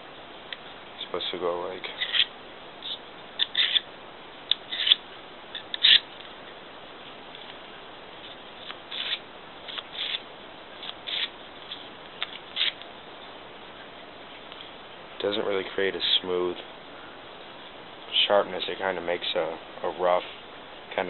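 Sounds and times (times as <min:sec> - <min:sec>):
knife scraping through sharpener: 0:02.0 - 0:02.3, 0:02.9 - 0:03.8, 0:04.7 - 0:05.0, 0:05.6 - 0:06.0, 0:08.9 - 0:10.2, 0:10.8 - 0:11.3, 0:12.5 - 0:12.8.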